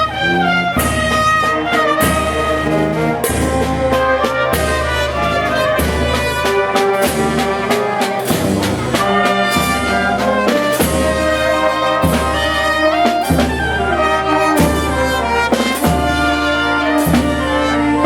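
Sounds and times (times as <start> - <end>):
brass band playing a march: 0.0 - 18.0.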